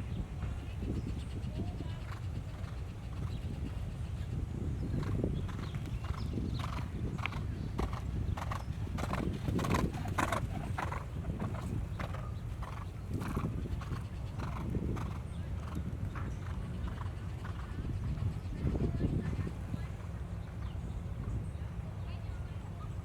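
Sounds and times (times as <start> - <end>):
horse hoofbeats: 5.0 - 17.8.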